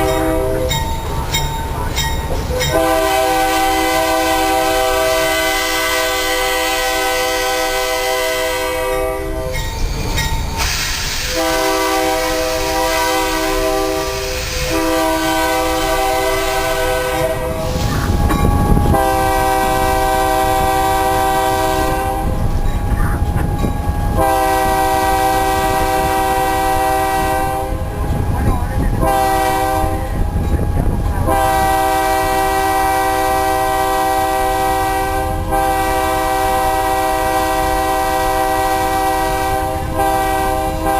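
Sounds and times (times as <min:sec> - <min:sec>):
locomotive air horn blasts: 0:00.0 - 0:00.8, 0:02.7 - 0:09.6, 0:11.2 - 0:22.4, 0:24.0 - 0:27.9, 0:29.0 - 0:30.2, 0:31.2 - 0:40.9
passing train rumble and clickety-clack: 0:00.0 - 0:40.9.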